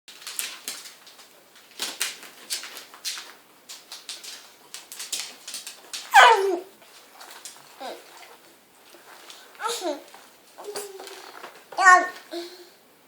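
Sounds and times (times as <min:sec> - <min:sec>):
puppies crunching food: 0:00.1 - 0:12.2.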